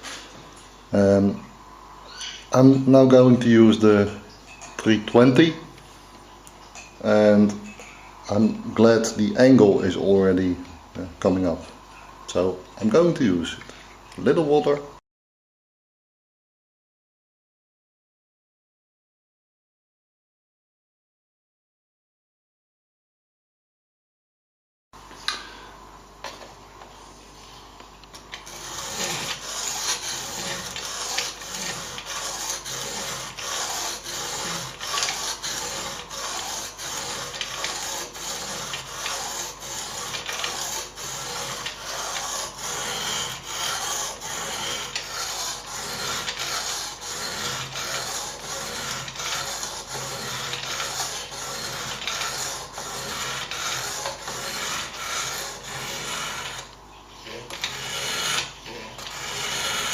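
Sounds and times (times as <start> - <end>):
sharpening stone rasping on knife: 28.4 - 56.7, 57.5 - 59.9.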